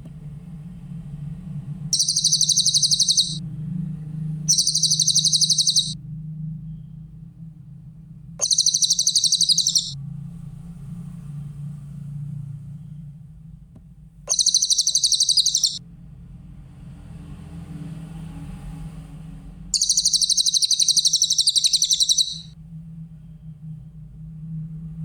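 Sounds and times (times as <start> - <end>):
steady low hum: 0.0 - 13.2, 14.0 - 15.8, 19.8 - 25.0
bird singing fast trills: 2.0 - 3.4, 4.5 - 6.0, 8.4 - 10.0, 14.3 - 15.8, 19.8 - 22.5.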